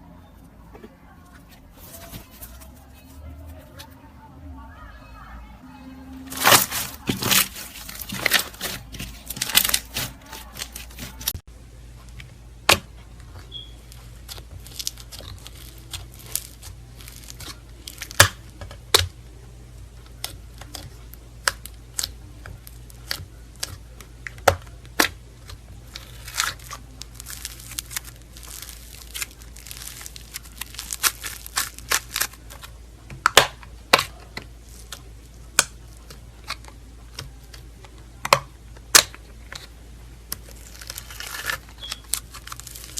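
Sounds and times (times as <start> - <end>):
low steady hum: 0.0 - 42.9
slime crackling and popping: 6.3 - 11.4, 12.6 - 19.2, 20.0 - 39.7, 40.3 - 42.9.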